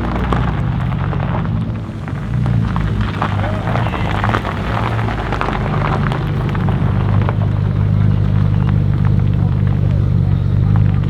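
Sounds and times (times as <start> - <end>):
engine running at low revs: 0.0 - 11.0.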